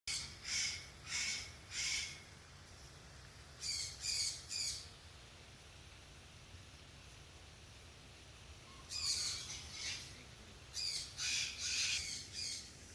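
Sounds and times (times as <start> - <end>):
harsh bird squawks: 0.1 - 2.2, 8.7 - 10.1, 10.8 - 12.7.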